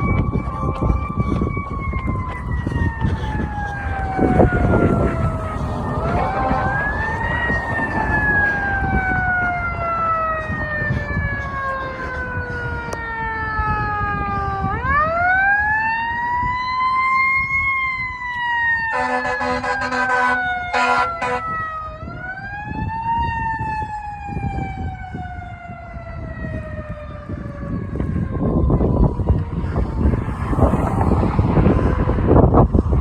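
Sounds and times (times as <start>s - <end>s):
truck engine rumble: 0.0s - 14.3s
air horn blasting: 4.2s - 7.6s, 18.9s - 21.6s.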